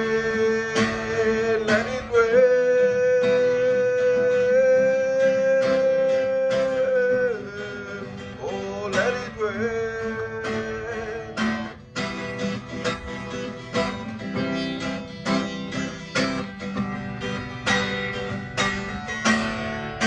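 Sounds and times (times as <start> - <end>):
person singing: 0.0 - 11.8
strummed acoustic guitar: 0.0 - 20.0.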